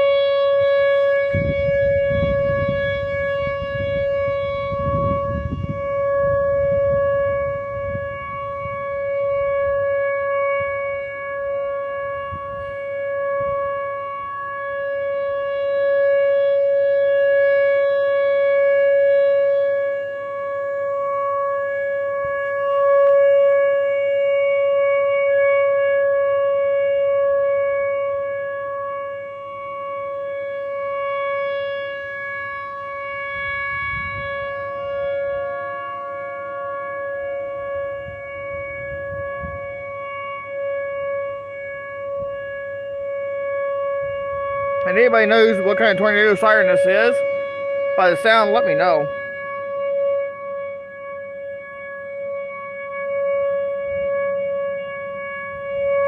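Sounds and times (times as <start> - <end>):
tornado siren steady pitch: 0.0 - 56.0.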